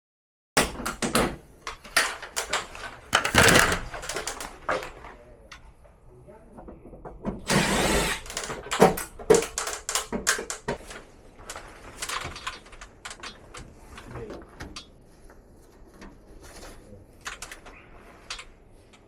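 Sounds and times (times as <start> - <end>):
hard objects clicking and knocking: 0.6 - 6.0, 6.6 - 14.9.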